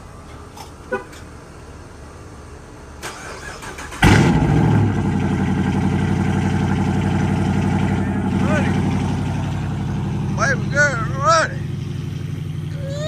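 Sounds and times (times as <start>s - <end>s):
starter motor cranking: 3.0s - 4.5s
car engine revving and idling: 3.1s - 13.0s.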